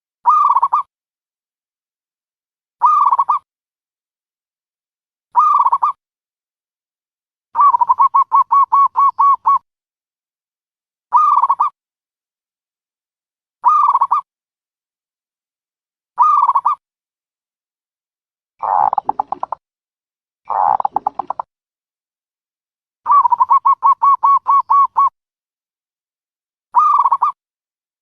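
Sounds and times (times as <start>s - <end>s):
dove calling: 5.4s - 6.0s, 7.6s - 9.6s, 11.1s - 11.7s, 16.2s - 16.8s, 18.6s - 19.6s, 20.5s - 21.5s, 23.1s - 25.1s, 26.8s - 27.4s.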